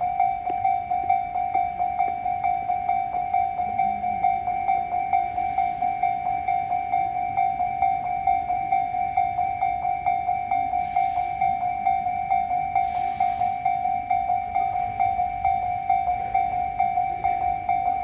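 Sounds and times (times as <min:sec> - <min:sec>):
short hissing bursts: 0:10.8 - 0:11.4.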